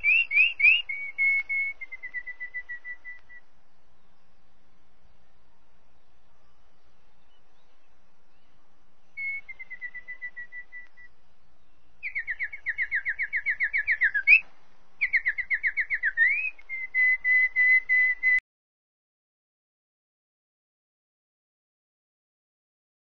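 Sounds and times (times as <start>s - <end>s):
bird singing whistled phrases: 0.0s - 3.4s, 9.2s - 11.2s, 12.0s - 18.4s.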